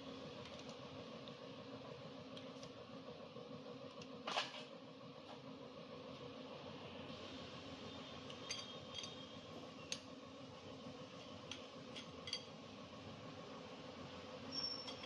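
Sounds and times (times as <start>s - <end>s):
metal tools clinking: 8.4s - 9.2s, 14.8s - 15.0s.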